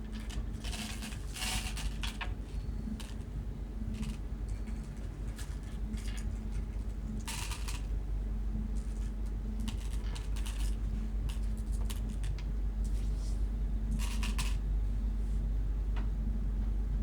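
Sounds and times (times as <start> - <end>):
steady low hum: 0.0 - 17.0
game stones clicking and clattering: 9.6 - 12.2.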